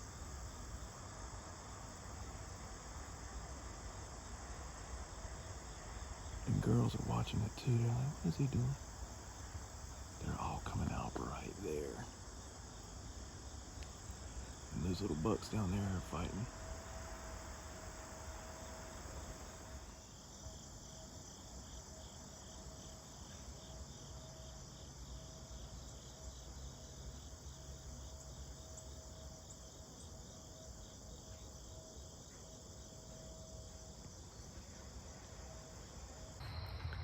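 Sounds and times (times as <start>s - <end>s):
crickets chirping: 0.0s - 37.0s.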